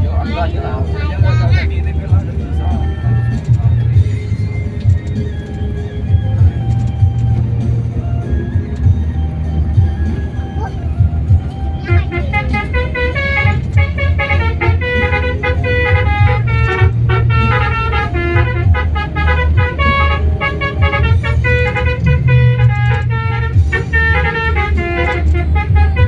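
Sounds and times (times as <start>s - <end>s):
bus engine drone: 0.0s - 26.0s
multi-note air horn tune: 11.8s - 26.0s.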